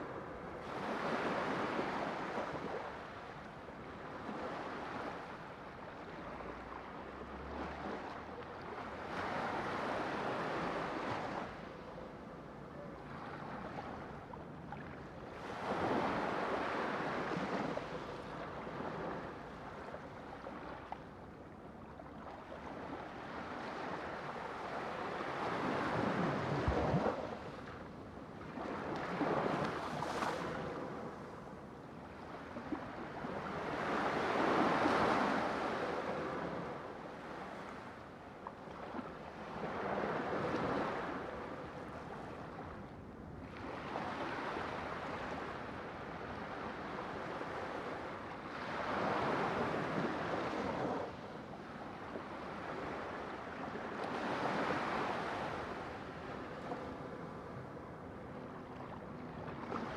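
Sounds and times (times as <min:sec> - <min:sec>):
sea waves breaking on shore: 0:28.5 - 0:31.4.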